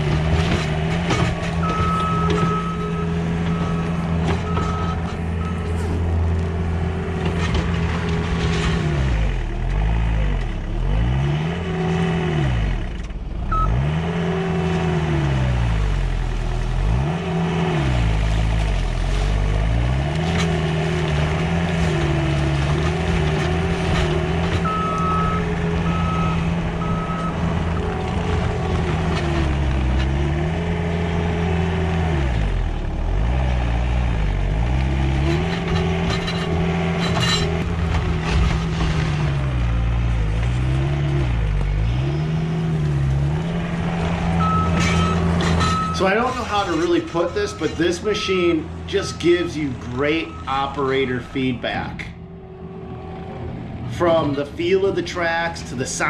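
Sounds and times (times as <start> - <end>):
diesel engine under heavy load: 0.0 - 56.0
backup alarm beeping: 1.6 - 5.8, 24.6 - 27.5.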